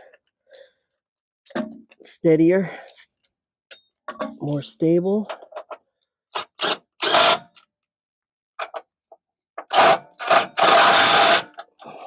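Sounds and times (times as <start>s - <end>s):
power tool bursts: 9.7s - 11.6s.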